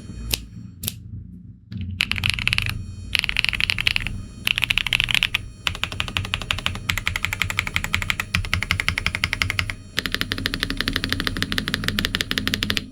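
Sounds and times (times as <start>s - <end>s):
fast typing on mechanical keyboard: 2.0s - 12.9s.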